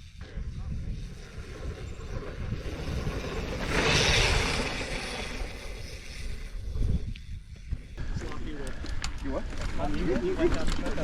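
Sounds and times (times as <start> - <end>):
bike rolling on dirt trail: 0.0 - 11.0
wind buffeting microphone: 0.0 - 11.0.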